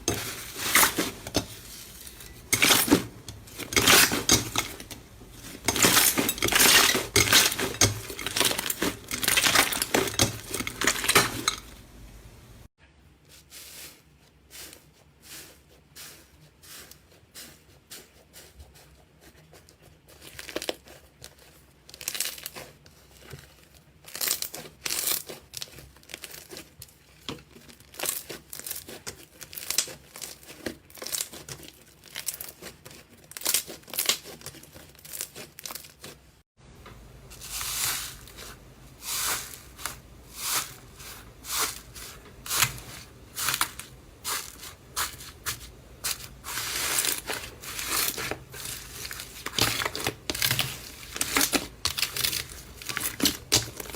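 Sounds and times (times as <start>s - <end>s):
low steady hum: 0.0s - 13.0s, 36.6s - 53.9s
slime crackling and popping: 27.8s - 36.2s.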